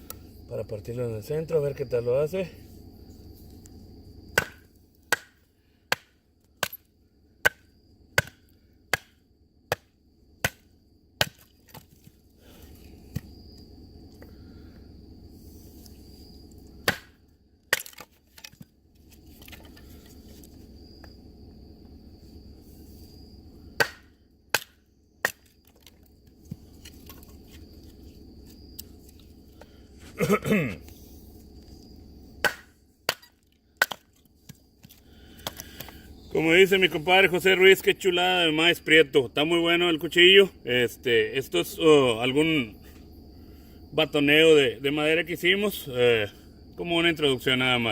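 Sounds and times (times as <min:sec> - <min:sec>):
wood splitting: 0:04.4 - 0:13.3, 0:16.8 - 0:18.7, 0:23.8 - 0:27.6, 0:32.4 - 0:36.0.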